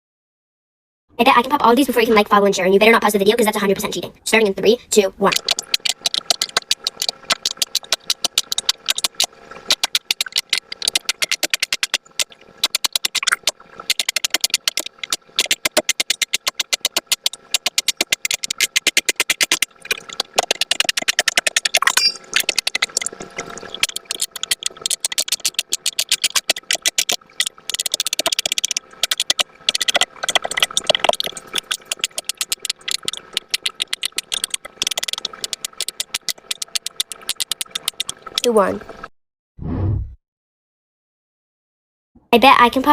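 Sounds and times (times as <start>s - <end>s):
fidget toy bubbles popping: 5.2s - 38.7s.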